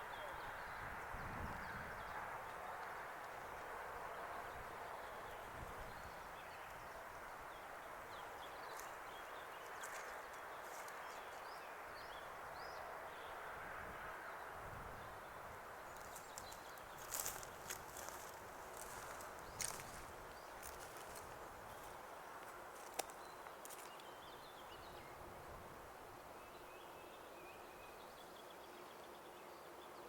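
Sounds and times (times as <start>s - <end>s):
wind gusts on microphone: 0.4s - 2.4s, 4.4s - 6.3s
small birds chirping: 15.2s - 25.2s.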